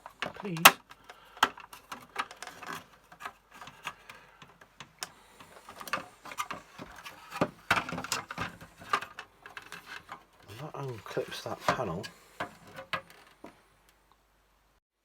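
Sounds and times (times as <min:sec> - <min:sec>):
plastic clicks creaks and knocks: 0:00.0 - 0:14.0.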